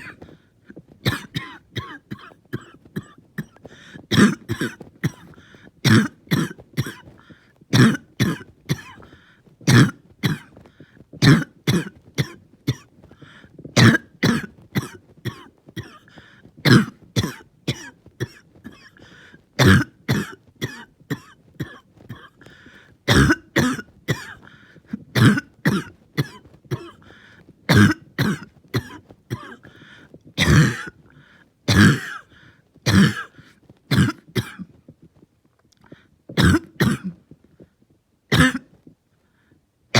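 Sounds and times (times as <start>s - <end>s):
person coughing: 0.0s - 31.0s, 31.7s - 34.8s, 36.4s - 37.2s, 38.3s - 38.8s
person breathing in: 3.6s - 4.1s, 5.3s - 5.8s, 13.1s - 13.6s, 16.1s - 16.5s, 19.0s - 19.4s, 22.4s - 23.0s, 24.4s - 24.9s, 27.0s - 27.5s, 29.6s - 30.2s, 32.3s - 32.7s.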